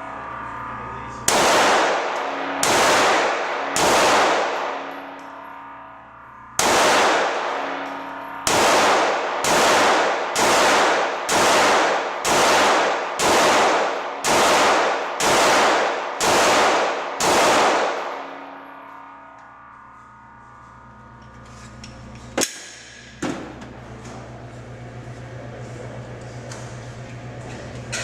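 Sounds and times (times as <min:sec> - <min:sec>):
pistol shots with ringing tail: 0:01.2 - 0:05.4, 0:06.6 - 0:18.8.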